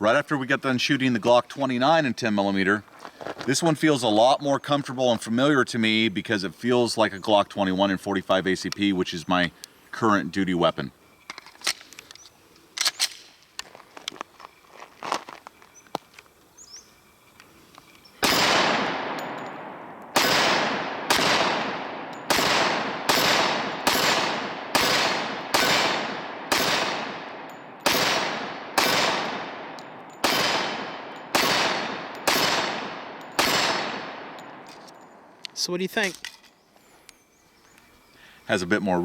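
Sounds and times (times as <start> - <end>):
pistol shots with echoing tail: 18.2 - 34.7.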